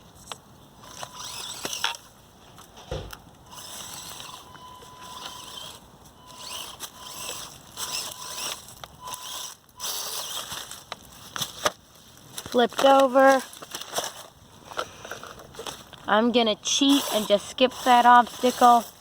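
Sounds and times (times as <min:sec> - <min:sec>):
tyres scrabbling on rocks: 0:00.1 - 0:19.0
small motor and gears whining: 0:00.2 - 0:02.1, 0:03.4 - 0:11.7, 0:16.6 - 0:19.0.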